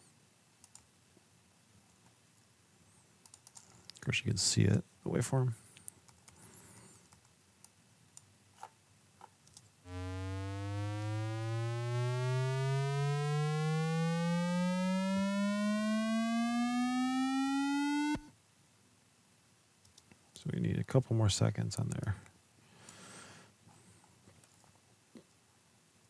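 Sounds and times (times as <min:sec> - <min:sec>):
faint mouse clicks: 0:00.6 - 0:00.9, 0:03.2 - 0:04.0, 0:19.8 - 0:20.2
synthesized buzzy rising tone: 0:09.9 - 0:18.3.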